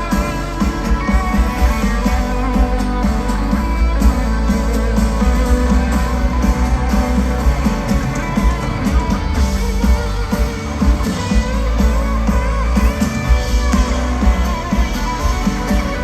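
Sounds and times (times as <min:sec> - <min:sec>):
live rock band playing: 0:00.0 - 0:16.0.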